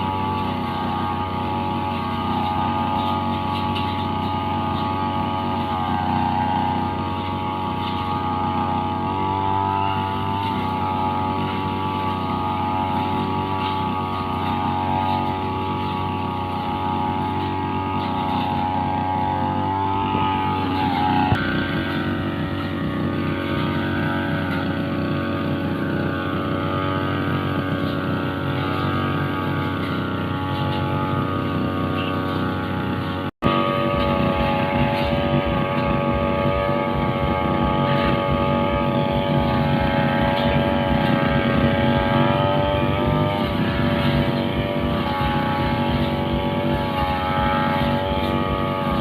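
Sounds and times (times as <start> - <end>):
brushcutter engine cutting grass: 0.0 - 49.0.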